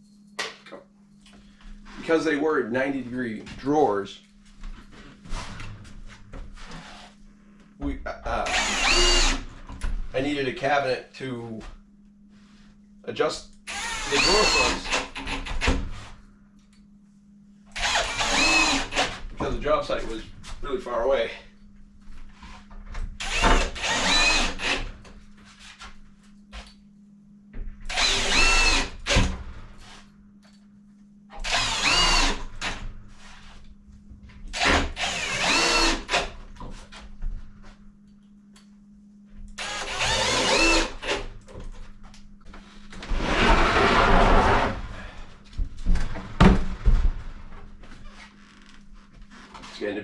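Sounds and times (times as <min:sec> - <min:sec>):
power drill driving screws: 0:08.4 - 0:09.4, 0:13.7 - 0:15.7, 0:17.8 - 0:19.2, 0:23.2 - 0:24.9, 0:27.9 - 0:30.0, 0:31.4 - 0:32.8, 0:34.5 - 0:36.3, 0:39.6 - 0:41.3.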